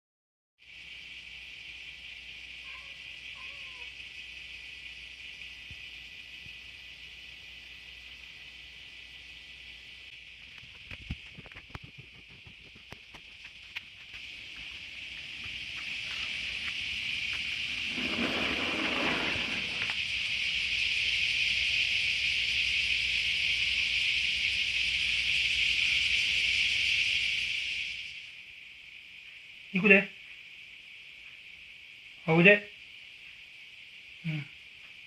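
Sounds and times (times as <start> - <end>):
insects buzzing: 0.6 - 35.0.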